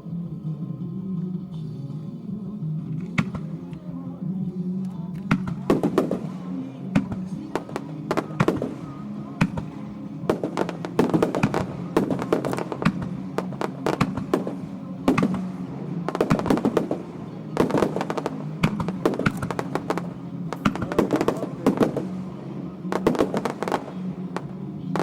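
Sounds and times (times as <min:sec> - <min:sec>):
steady low hum: 0:00.0 - 0:25.0
fireworks crackling and popping: 0:03.0 - 0:03.8, 0:05.0 - 0:25.0.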